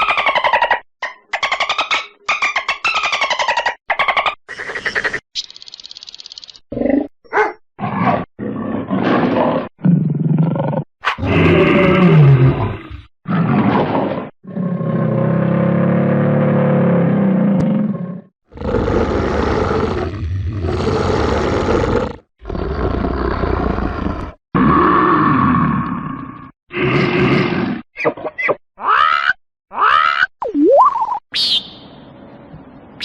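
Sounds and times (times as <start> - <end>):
large animals roaring: 8.2 - 27.8.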